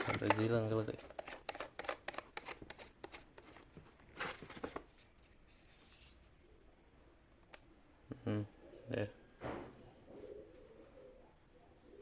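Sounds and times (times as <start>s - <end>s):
handling clicks and rustles: 0.0s - 4.9s.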